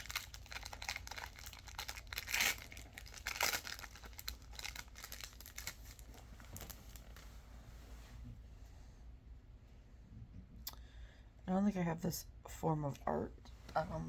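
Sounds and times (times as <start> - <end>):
foil wrapper tearing and crinkling: 0.0 - 7.2.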